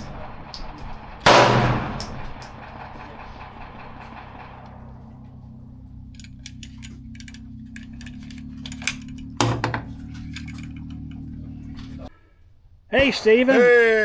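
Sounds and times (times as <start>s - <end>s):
steady low hum: 0.0s - 12.9s
brass cartridge cases clinking: 5.5s - 11.4s.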